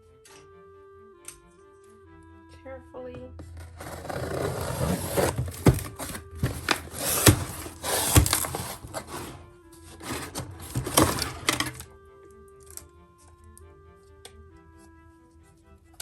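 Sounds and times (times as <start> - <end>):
soft background music: 0.0 - 16.0
packaging rustling and crinkling: 3.6 - 11.8
sharp cracks of packaging: 5.2 - 9.3.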